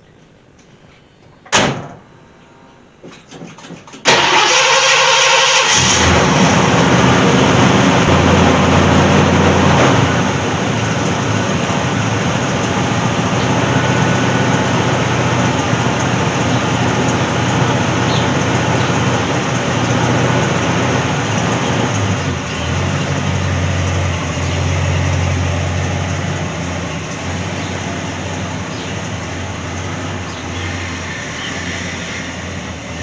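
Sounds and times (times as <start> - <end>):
sharp thump: 1.5 - 2.0
car engine starter cranking: 3.5 - 7.7
car engine idling: 4.1 - 33.0.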